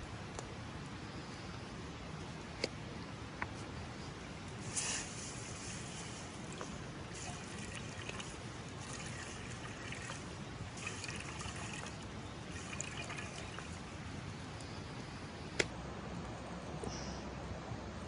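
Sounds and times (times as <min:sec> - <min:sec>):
liquid trickling: 0:04.6 - 0:14.2.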